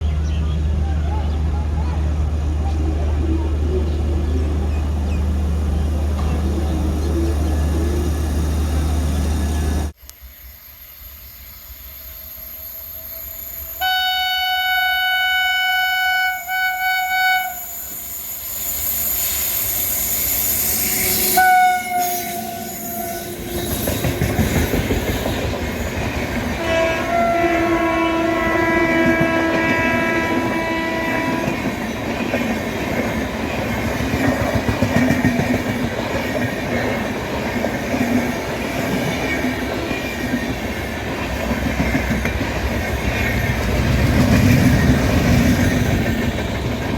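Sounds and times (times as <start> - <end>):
train horn blasts: 13.8 - 18.0, 20.9 - 23.7, 26.6 - 31.8.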